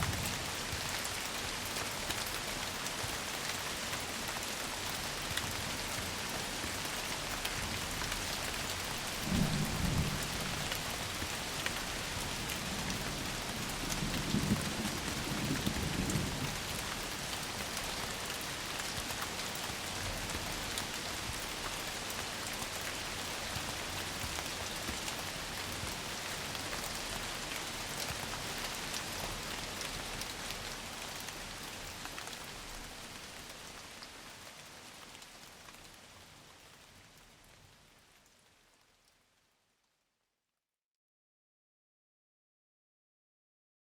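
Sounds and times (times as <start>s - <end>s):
steady rain: 0.0s - 40.0s
thunder rumbling: 9.0s - 11.2s.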